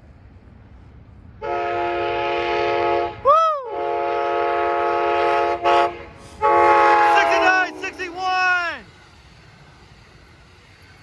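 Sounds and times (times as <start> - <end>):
train air horn chord: 1.4 - 8.1.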